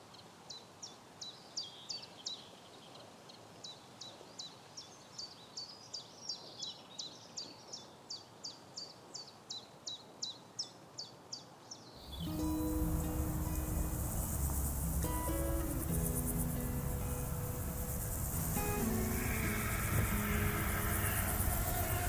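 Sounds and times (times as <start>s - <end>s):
bird calling high notes: 12.1s - 22.0s
music: 12.1s - 22.0s.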